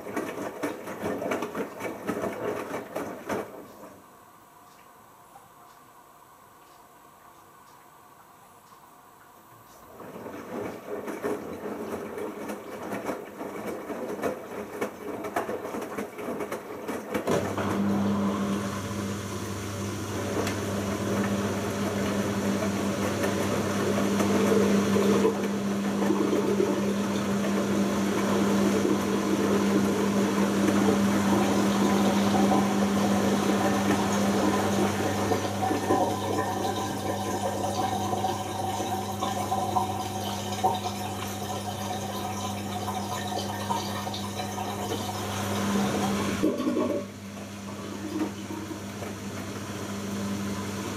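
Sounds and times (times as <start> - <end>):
drain pump humming: 17.2 - 50.9
water gurgling: 17.7 - 48.9.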